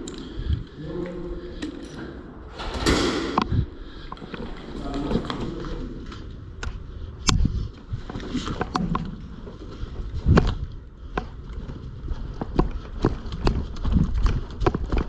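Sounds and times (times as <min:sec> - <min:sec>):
low rumble of movement: 0:00.0 - 0:15.0
sharp clicks and knocks: 0:02.6 - 0:04.4.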